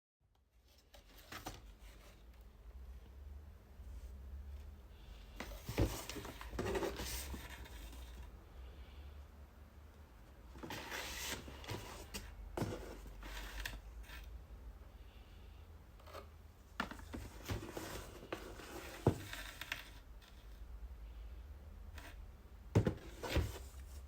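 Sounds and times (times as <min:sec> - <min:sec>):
packaging rustling and scraping: 0:00.6 - 0:02.3, 0:05.4 - 0:08.3, 0:10.6 - 0:14.3, 0:16.8 - 0:20.4, 0:22.8 - 0:24.0.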